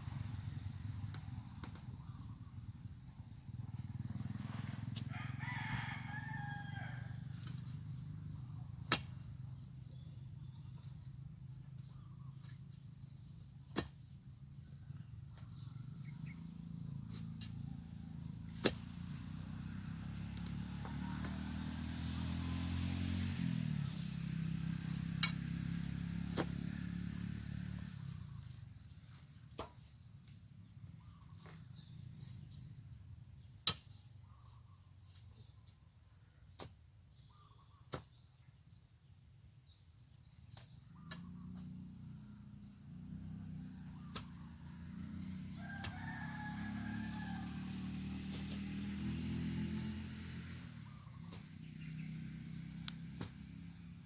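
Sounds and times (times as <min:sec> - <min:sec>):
rooster crowing: 0:05.1 - 0:07.3, 0:20.4 - 0:22.6, 0:43.7 - 0:48.5.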